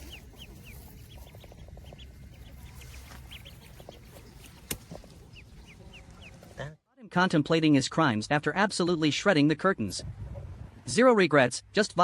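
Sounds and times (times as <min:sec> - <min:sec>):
chickens peeping: 0:00.0 - 0:06.7.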